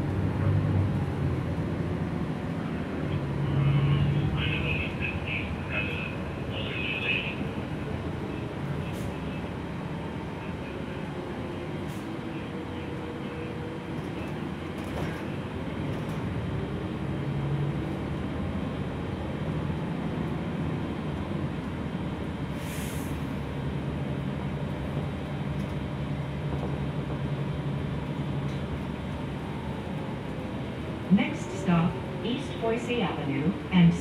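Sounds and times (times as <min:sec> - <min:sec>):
bus engine hum: 0:00.0 - 0:34.0
road noise: 0:00.0 - 0:34.0
air hiss: 0:22.6 - 0:23.3.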